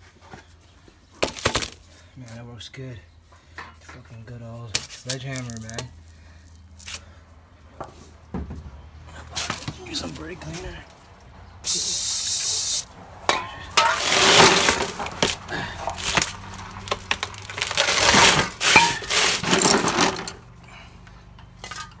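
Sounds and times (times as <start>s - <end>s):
aerosol can spraying: 11.7s - 12.8s
scraping and rasping: 13.4s - 20.4s.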